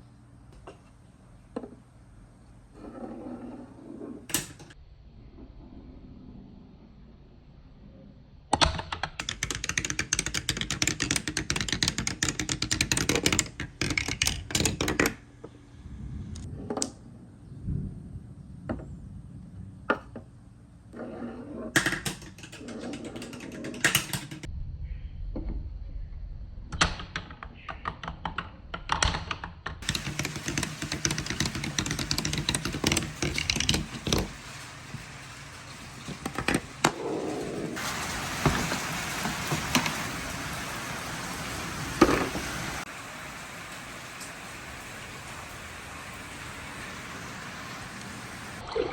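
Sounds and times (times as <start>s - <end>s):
low rolling rumble: 1.1s - 8.4s, 15.3s - 21.7s, 24.4s - 26.7s
marbles clicking on wooden track: 8.6s - 15.2s, 21.6s - 24.5s, 27.2s - 37.7s, 42.0s - 42.5s.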